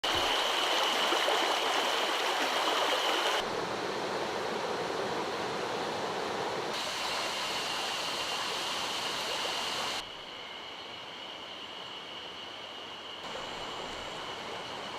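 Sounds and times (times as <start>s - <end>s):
stream rushing over rocks: 0.0s - 3.8s.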